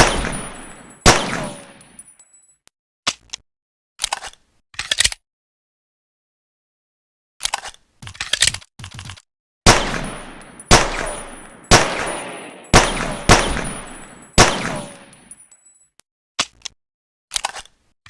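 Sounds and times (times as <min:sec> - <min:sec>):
pistol shots echoing: 0:00.0 - 0:01.9, 0:09.7 - 0:15.4.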